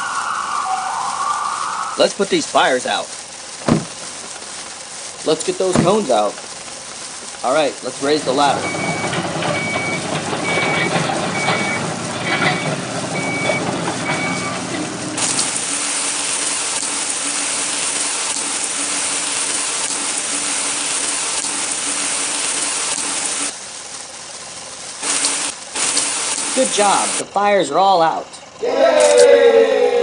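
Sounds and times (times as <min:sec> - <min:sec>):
water spraying hiss: 0:00.0 - 0:27.2
low motor noise: 0:03.1 - 0:27.4
toy truck beeping: 0:08.3 - 0:14.7.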